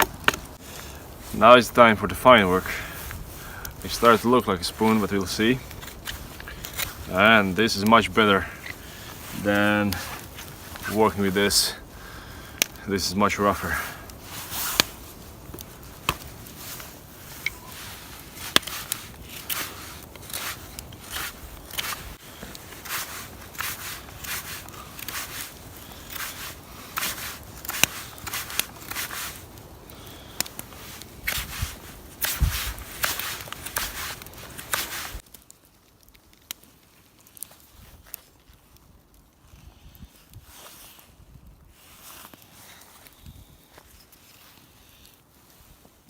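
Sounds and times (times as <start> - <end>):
knife carving wood: 14.1 - 35.3.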